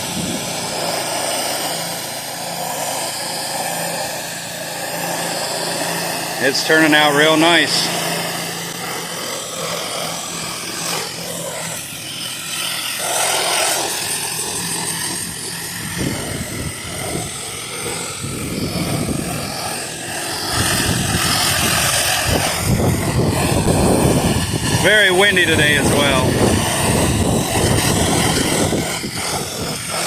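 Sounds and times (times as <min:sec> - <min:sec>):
wind buffeting microphone: 0:00.0 - 0:01.0, 0:14.0 - 0:30.0
water hissing: 0:00.0 - 0:30.0.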